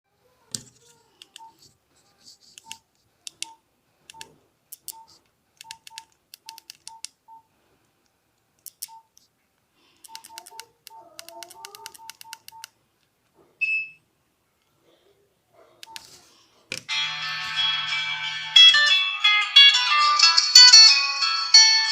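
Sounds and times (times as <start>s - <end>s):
keypad clicks with beeps: 2.6s - 7.5s, 8.6s - 9.2s, 10.0s - 12.8s, 15.8s - 16.1s
loud high tone: 16.9s - 20.2s.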